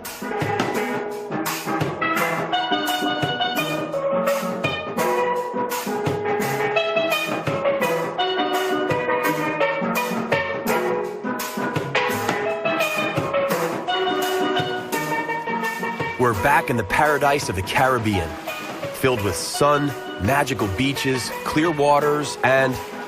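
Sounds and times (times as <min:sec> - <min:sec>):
drum beat: 0:00.0 - 0:03.8, 0:11.4 - 0:15.2, 0:15.8 - 0:23.0
steelpan melody: 0:00.1 - 0:23.0.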